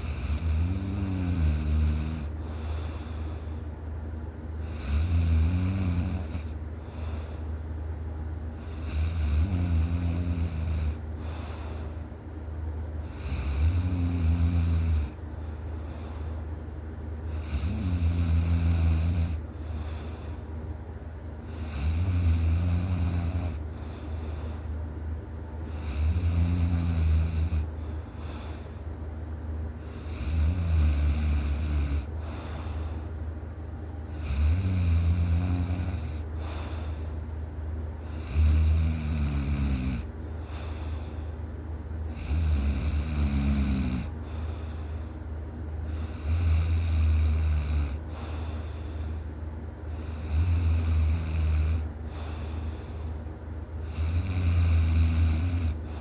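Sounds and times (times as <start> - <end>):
person snoring: 0.0 - 2.3, 4.6 - 6.6, 8.7 - 11.0, 13.1 - 15.2, 17.4 - 19.4, 21.5 - 23.6, 25.8 - 27.7, 29.9 - 32.1, 34.2 - 36.2, 38.1 - 40.1, 42.1 - 44.1, 46.0 - 48.0, 50.0 - 51.9, 53.8 - 56.0
quiet breathing: 0.0 - 56.0.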